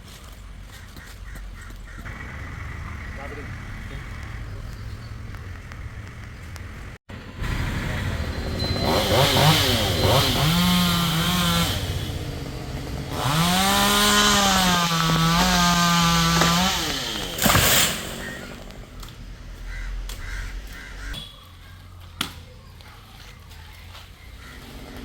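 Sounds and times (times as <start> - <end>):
chainsaw revving and cutting: 8.6 - 18.8, 24.6 - 25.0.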